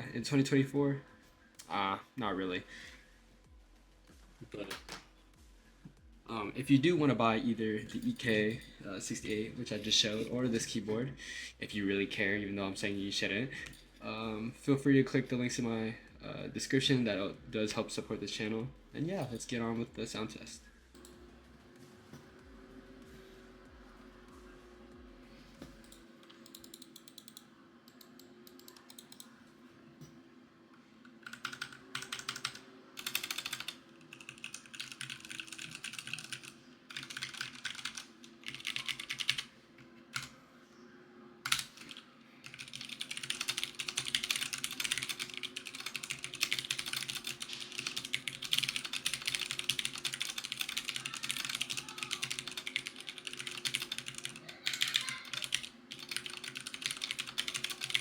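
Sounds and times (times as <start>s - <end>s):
mechanical keyboard typing: 31.3s - 39.5s, 41.5s - 58.0s.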